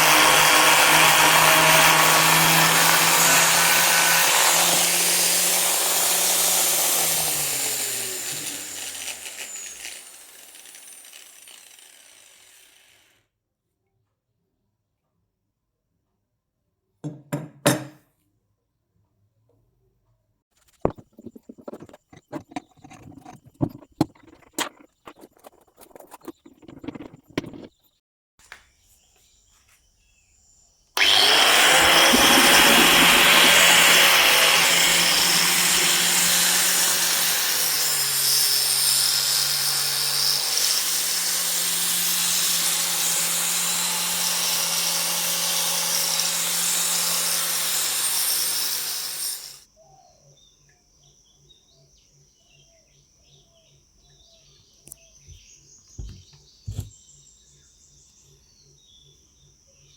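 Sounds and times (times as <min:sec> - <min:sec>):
angle grinder running: 0:00.0 - 0:13.2, 0:31.0 - 0:49.6
handling clicks and knocks: 0:20.8 - 0:27.8.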